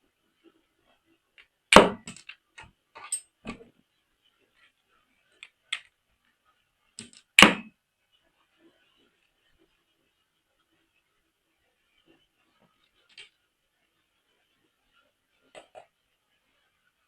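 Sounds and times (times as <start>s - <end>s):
plastic toys clicking and knocking: 1.4s - 3.3s, 7.0s - 7.6s.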